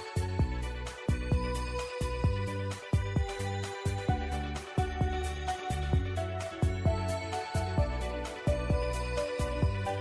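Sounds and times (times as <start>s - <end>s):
music with drum beat and bass: 0.0s - 10.0s.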